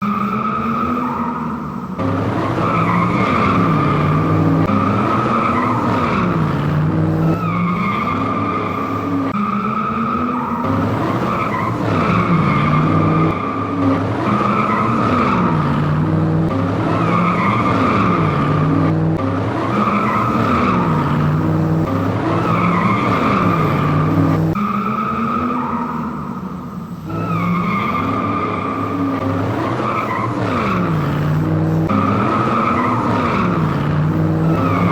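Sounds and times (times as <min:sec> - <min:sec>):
car engine revving: 0:00.0 - 0:34.9
tyre squeal: 0:31.9 - 0:34.9.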